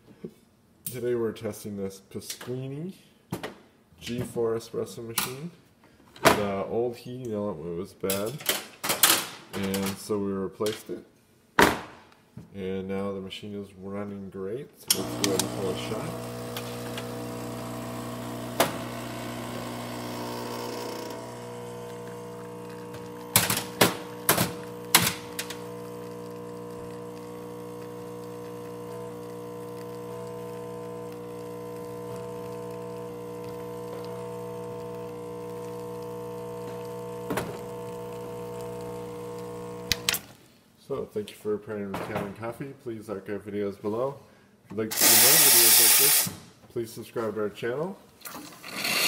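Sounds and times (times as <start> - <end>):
espresso machine pump humming: 14.9 - 40.2, 45.0 - 46.1.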